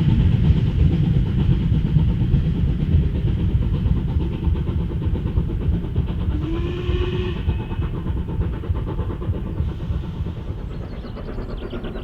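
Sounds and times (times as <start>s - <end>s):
steam locomotive rumble: 0.0s - 12.0s
steam locomotive whistle: 6.3s - 7.7s.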